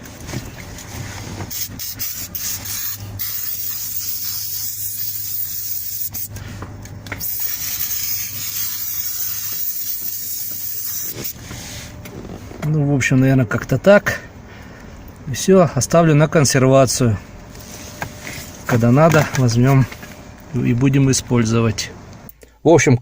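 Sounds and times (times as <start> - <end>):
aerosol can spraying: 1.5 - 6.3, 7.2 - 11.7.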